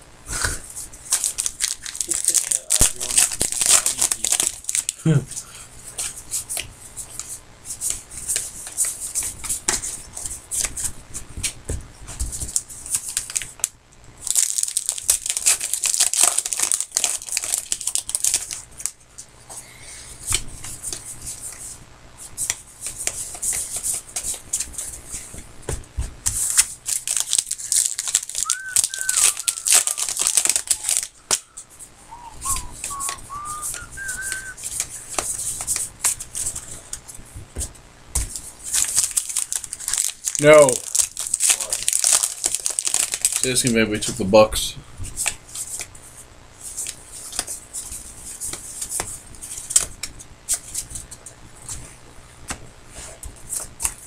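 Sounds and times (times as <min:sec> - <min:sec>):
card wrappers tearing and crinkling: 0:01.0 - 0:05.1, 0:12.2 - 0:19.0, 0:26.2 - 0:37.0, 0:38.2 - 0:43.8, 0:46.6 - 0:51.8
person whistling: 0:28.4 - 0:34.6.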